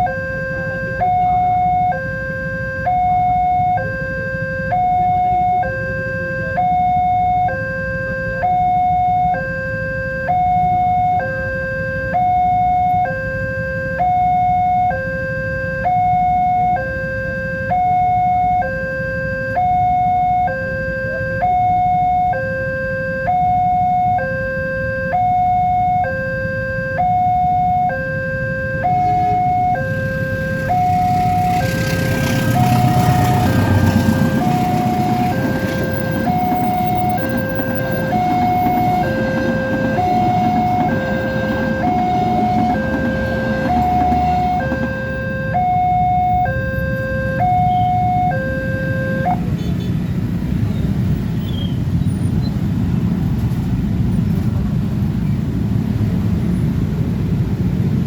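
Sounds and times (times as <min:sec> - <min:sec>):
two-tone crossing alarm: 0:00.0 - 0:49.6.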